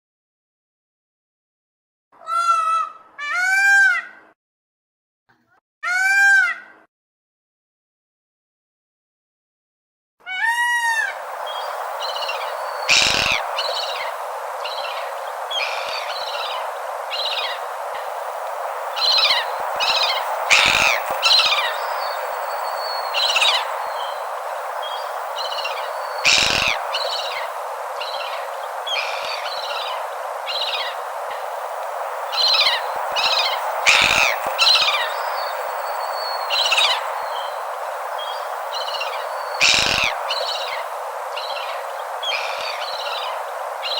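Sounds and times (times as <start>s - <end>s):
outdoor ambience hiss: 10.6s - 43.9s
birds chirping and calling: 11.1s - 43.9s.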